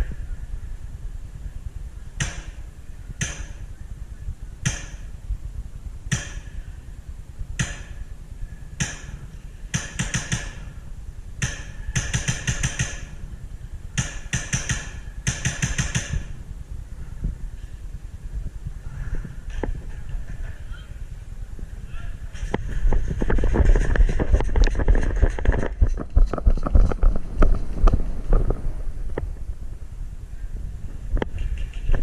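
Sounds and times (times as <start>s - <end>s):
wind rumble on microphone: 0.0s - 9.8s, 10.5s - 32.0s
airsoft rifle shots: 6.1s - 6.6s, 8.8s - 10.8s, 11.4s - 13.2s, 14.0s - 16.4s
microphone handling noise: 16.1s - 32.0s.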